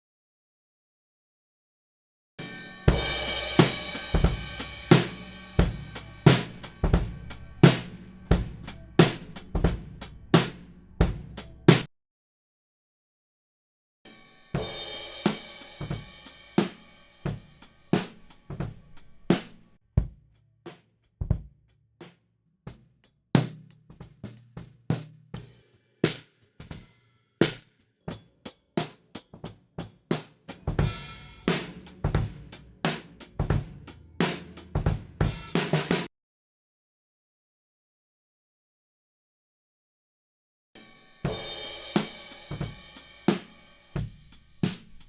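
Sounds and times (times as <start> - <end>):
crash cymbal ringing: 2.4 - 10.5
drum kit groove: 2.4 - 11.9, 14.5 - 21.5, 22.7 - 36.1, 40.8 - 45.0.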